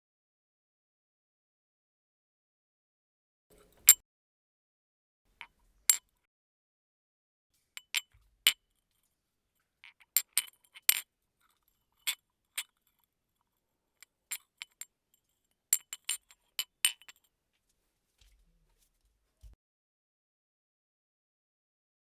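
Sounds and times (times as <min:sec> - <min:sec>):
tea glass clinking: 0:07.8 - 0:08.2.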